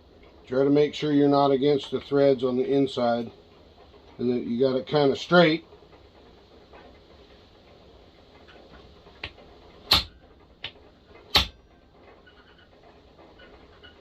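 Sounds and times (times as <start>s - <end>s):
sharp taps on metal tool: 9.2s - 11.6s.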